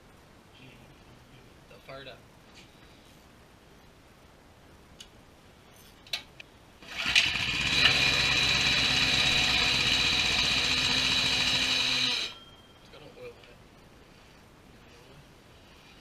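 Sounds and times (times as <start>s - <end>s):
small bike engine whining: 6.8s - 12.4s.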